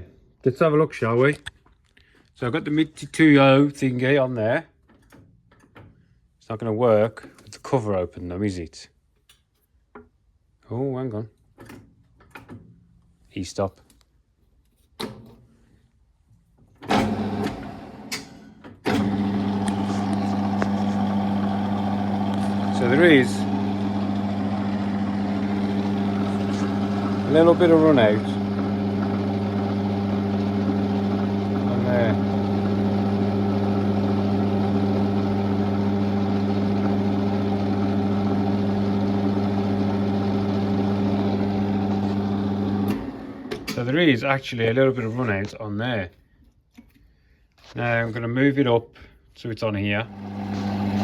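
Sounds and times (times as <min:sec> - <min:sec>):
lathe starting up and running: 0:16.8 - 0:43.9, 0:50.0 - 0:51.0.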